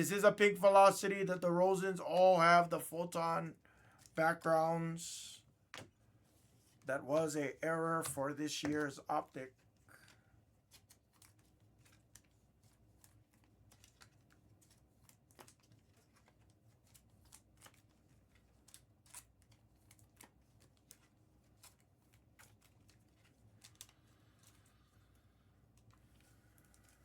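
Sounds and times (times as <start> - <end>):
trading cards being handled: 6.7 - 27.0.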